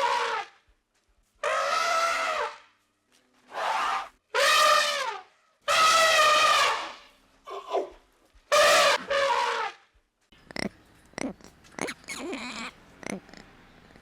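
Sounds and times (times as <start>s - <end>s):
animal drawn-out calls: 10.4s - 14.0s.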